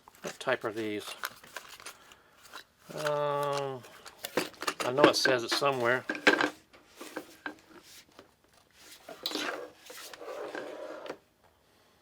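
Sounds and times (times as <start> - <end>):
hands rubbing and scraping paper: 8.8 - 10.8.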